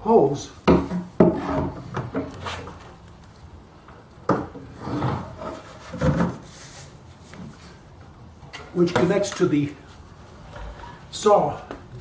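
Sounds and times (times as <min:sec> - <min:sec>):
hose rubbing scrapes: 0:04.7 - 0:07.0.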